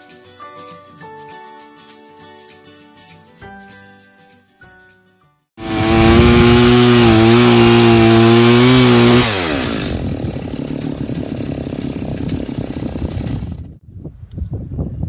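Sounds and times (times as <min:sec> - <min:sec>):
chainsaw running at high revs: 0:05.6 - 0:13.7.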